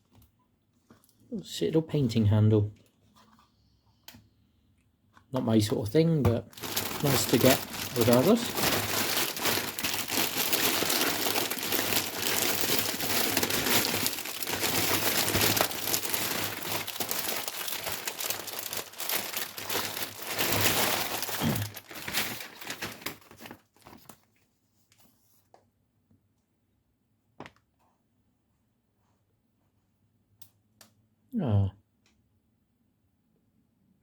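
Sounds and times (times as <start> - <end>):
packaging crumpling and rustling: 6.3 - 25.0.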